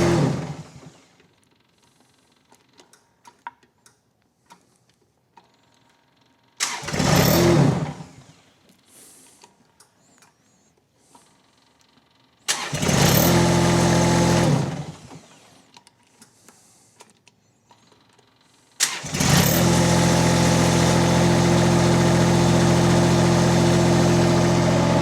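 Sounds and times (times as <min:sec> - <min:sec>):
diesel engine starting and idling: 0:06.6 - 0:08.6, 0:12.5 - 0:15.6, 0:18.8 - 0:25.0.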